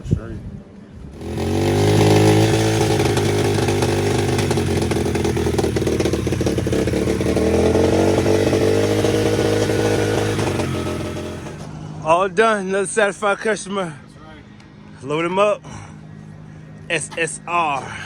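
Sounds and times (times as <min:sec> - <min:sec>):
dirt bike engine running: 0:01.2 - 0:12.0.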